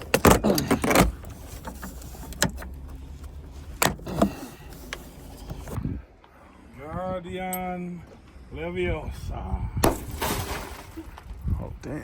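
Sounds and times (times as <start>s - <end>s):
car trim knocks and creaks: 0.0s - 5.8s.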